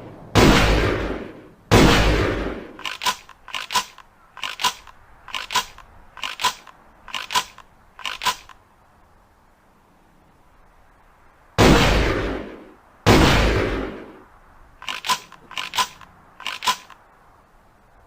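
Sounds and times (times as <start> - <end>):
shotgun shot: 0.4 - 6.6, 11.6 - 14.1
shotgun pump action clacks: 2.8 - 8.6, 14.8 - 17.0.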